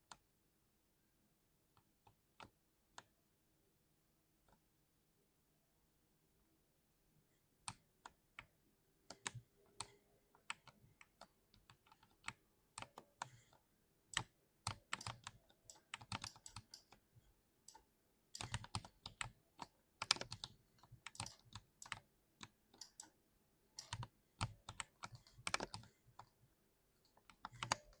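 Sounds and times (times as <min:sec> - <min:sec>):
typing on mechanical keyboard: 0:14.2 - 0:17.0, 0:17.7 - 0:23.2, 0:23.8 - 0:26.3, 0:27.1 - 0:28.0.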